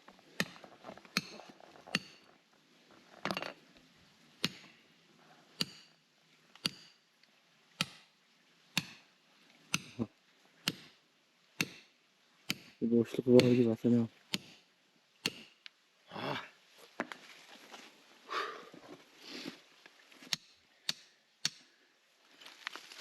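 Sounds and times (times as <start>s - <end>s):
hammer tapping rock: 5.6s - 5.9s, 6.6s - 7.0s, 7.8s - 8.1s, 8.8s - 9.0s, 9.7s - 10.0s, 10.6s - 10.9s, 11.6s - 11.9s, 12.5s - 12.8s, 13.4s - 13.6s, 14.3s - 14.6s, 15.2s - 15.6s, 20.3s - 21.6s.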